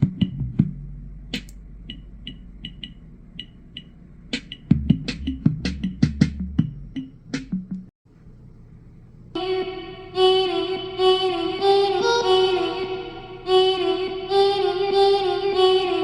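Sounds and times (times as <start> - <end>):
kick drums and deep bass: 0.0 - 7.9
electronic music with drum-machine beat: 1.4 - 7.9.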